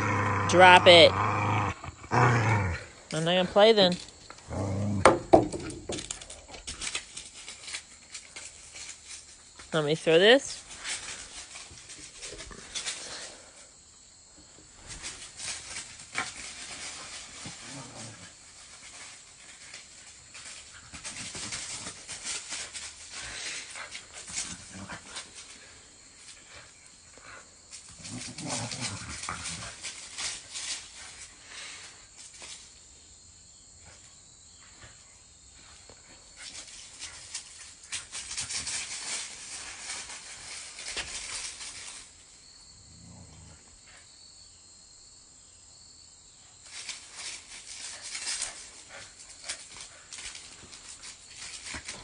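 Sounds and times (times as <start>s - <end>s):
dog growling low: 0.0s - 3.1s, 4.4s - 5.1s, 17.6s - 18.4s, 28.0s - 29.8s, 42.9s - 43.7s
dog chewing and dragging stick: 0.0s - 13.3s, 14.8s - 25.8s, 27.9s - 31.3s.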